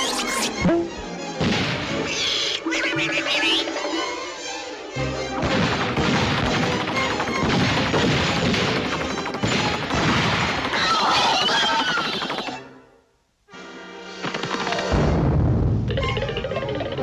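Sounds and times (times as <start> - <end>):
orchestral music: 0.0 - 10.7.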